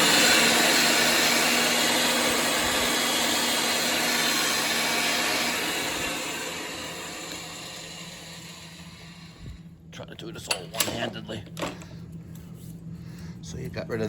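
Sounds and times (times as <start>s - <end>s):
pipe threading machine motor hum: 0.0s - 9.6s.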